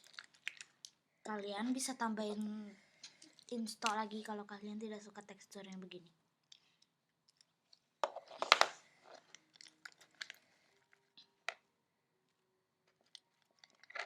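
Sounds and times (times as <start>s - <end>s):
slime squelching and clicking: 0.0s - 1.0s, 3.0s - 4.4s, 5.7s - 10.4s.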